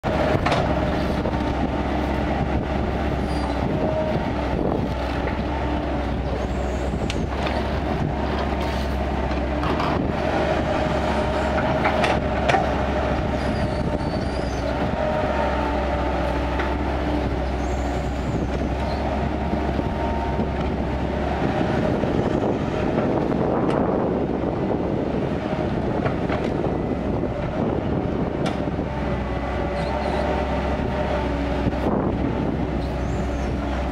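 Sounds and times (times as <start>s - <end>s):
excavator diesel engine running: 0.0s - 33.9s
metal clanks and knocks: 9.3s - 10.0s.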